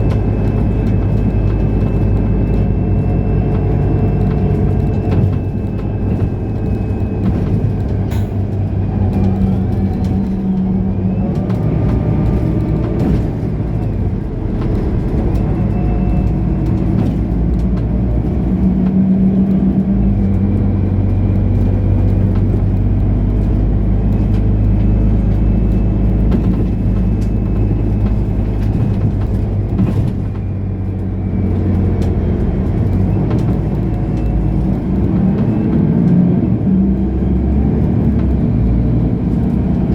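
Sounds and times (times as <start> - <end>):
bus diesel engine droning: 0.0 - 39.9.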